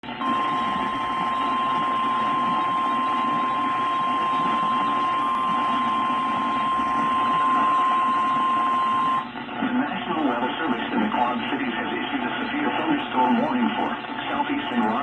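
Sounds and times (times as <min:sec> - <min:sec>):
radio static: 0:00.0 - 0:15.0
steady warning beep: 0:00.2 - 0:09.3.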